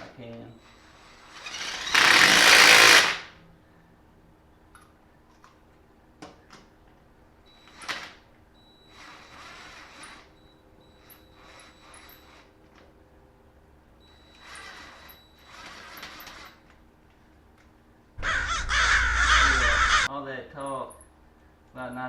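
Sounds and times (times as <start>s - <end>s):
impact wrench bursts: 0.7s - 3.4s.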